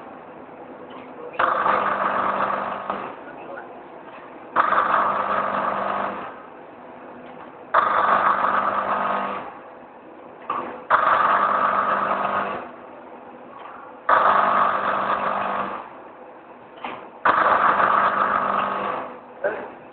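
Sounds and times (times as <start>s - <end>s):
auger filler motor running: 1.4s - 3.5s, 4.6s - 6.5s, 7.8s - 9.6s, 10.5s - 12.8s, 14.1s - 16.0s, 16.8s - 19.7s.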